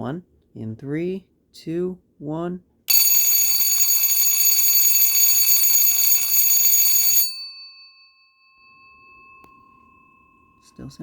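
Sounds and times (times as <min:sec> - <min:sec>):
electric bell ringing: 0:02.9 - 0:11.0.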